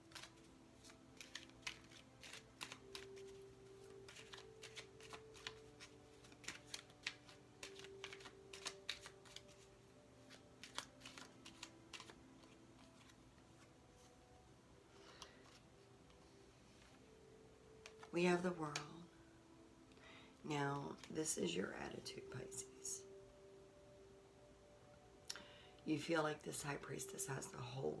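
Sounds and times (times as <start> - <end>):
cards clicking and tapping: 0.0 - 13.7, 17.7 - 18.1
faint background music: 0.0 - 28.0.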